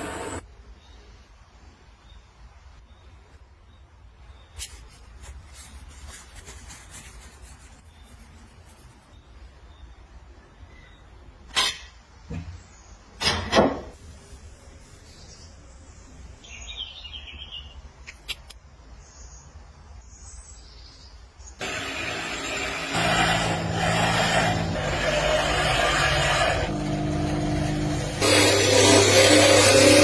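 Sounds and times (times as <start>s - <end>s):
motor running: 0.0s - 0.4s, 21.6s - 30.0s.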